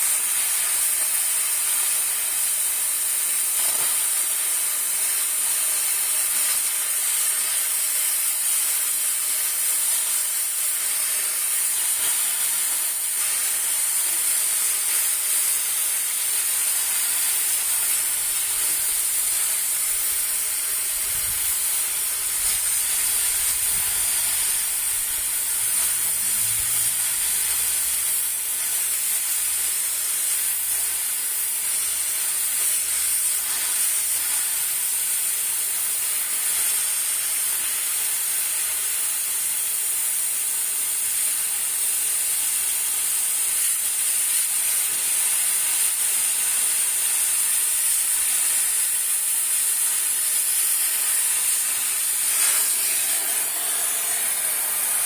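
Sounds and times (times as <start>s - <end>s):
loud hiss: 3.4s - 34.4s, 48.1s - 55.0s.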